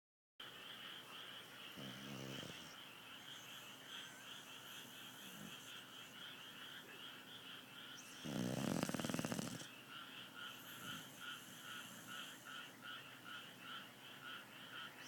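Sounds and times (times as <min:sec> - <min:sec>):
dog snoring: 0:01.7 - 0:06.2, 0:08.0 - 0:09.7, 0:10.5 - 0:12.7.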